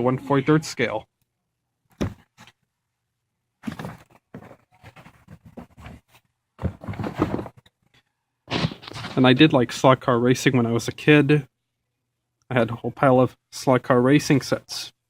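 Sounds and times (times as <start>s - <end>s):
rustling scraping handling noise: 3.6s - 9.5s.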